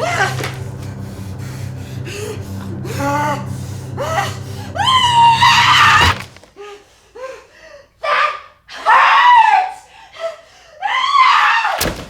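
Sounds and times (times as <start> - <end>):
low steady hum: 0.0 - 6.5.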